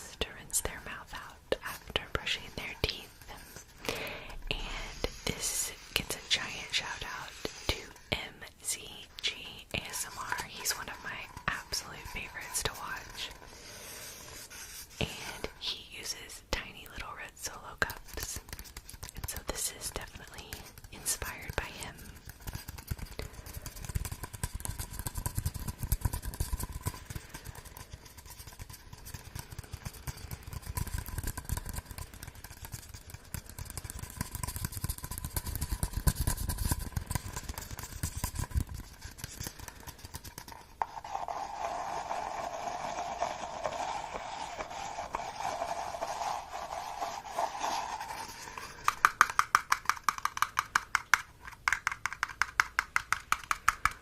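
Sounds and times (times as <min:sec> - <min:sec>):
crackly scratching and rubbing: 0:00.0 - 0:03.8, 0:04.4 - 0:54.0
rapid tapping: 0:47.6 - 0:54.0.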